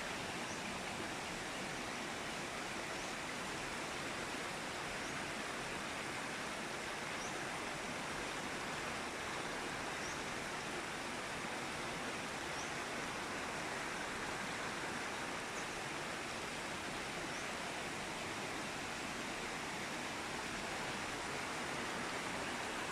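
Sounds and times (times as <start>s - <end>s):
mountain river rushing: 0.0s - 22.9s.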